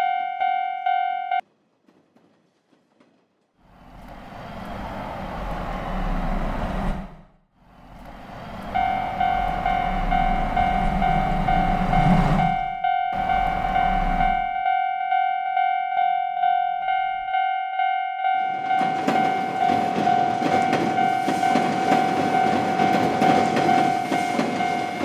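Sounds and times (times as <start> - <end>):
railroad crossing alarm dinging: 0.0 - 1.4, 7.9 - 25.0
train wheels rumbling on rails: 1.5 - 14.7, 18.2 - 25.0.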